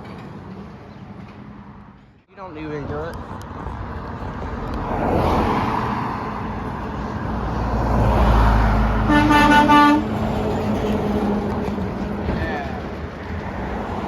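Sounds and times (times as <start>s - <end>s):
truck passing: 0.0s - 14.0s
truck horn blast: 9.0s - 10.2s.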